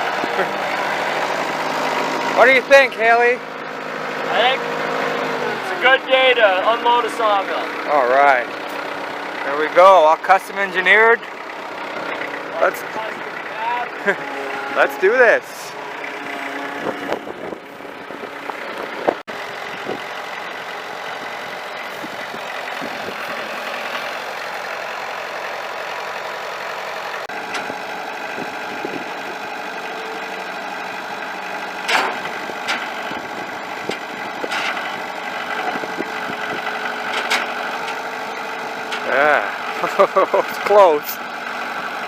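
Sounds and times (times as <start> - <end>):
tractor engine running: 0.0 - 42.0
metal clunks: 27.4 - 27.8, 31.8 - 33.2, 33.8 - 38.1.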